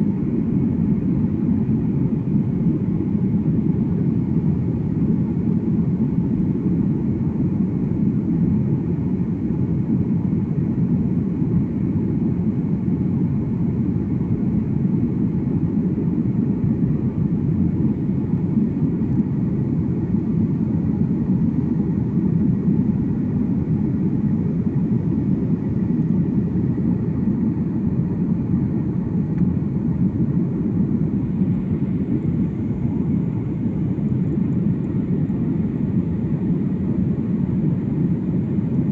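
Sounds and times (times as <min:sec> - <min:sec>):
airliner cabin engine rumble: 0:00.0 - 0:38.9.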